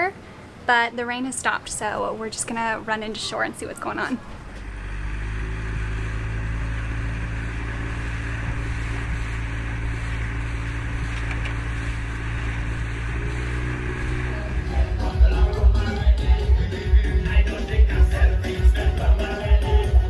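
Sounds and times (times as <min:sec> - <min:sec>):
water noise: 0:04.1 - 0:15.8
outboard motor droning: 0:04.2 - 0:17.0.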